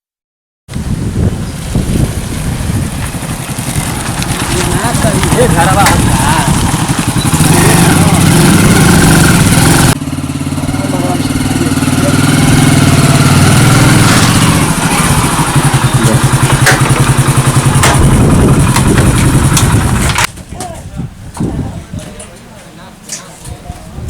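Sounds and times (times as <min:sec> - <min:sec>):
engine running: 0:01.5 - 0:20.3.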